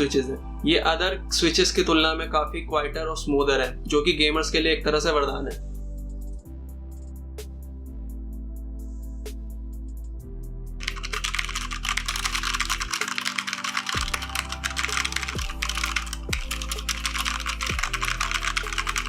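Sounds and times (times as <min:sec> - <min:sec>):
background music: 0:00.0 - 0:19.0
fast typing on mechanical keyboard: 0:10.8 - 0:19.0.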